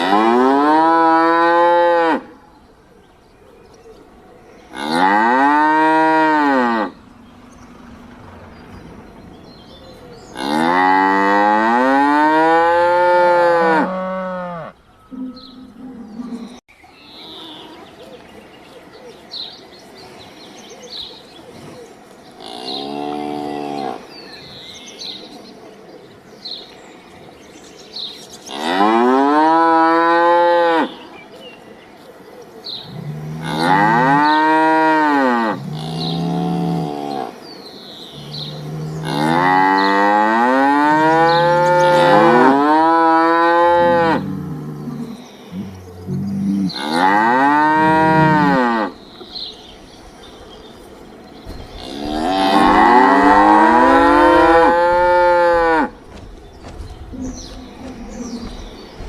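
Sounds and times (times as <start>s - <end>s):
cattle mooing: 0.0s - 2.3s, 4.7s - 16.6s, 33.0s - 37.4s, 38.2s - 49.0s, 51.7s - 55.9s.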